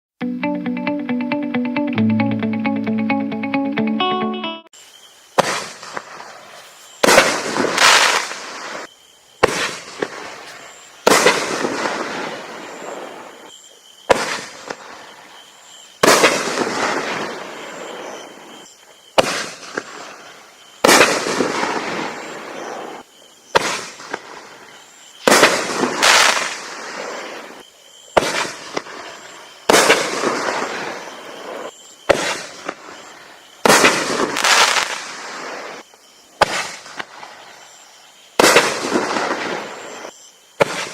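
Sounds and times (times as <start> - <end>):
hissing crackling firework tail: 4.7 - 40.9
firework bangs: 5.4 - 13.5, 14.1 - 15.2, 16.0 - 18.6, 19.2 - 35.8, 36.4 - 37.6, 38.4 - 40.9.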